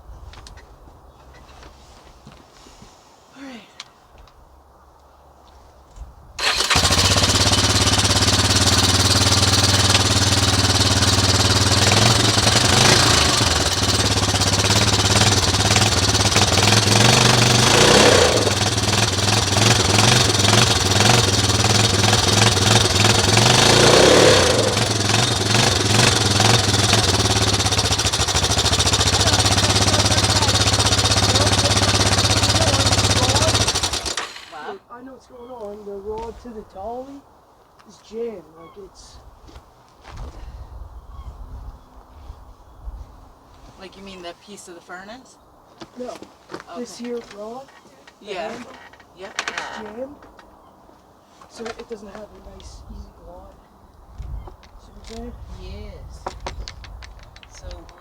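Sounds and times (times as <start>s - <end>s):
atv engine running and revving: 6.4s - 34.6s.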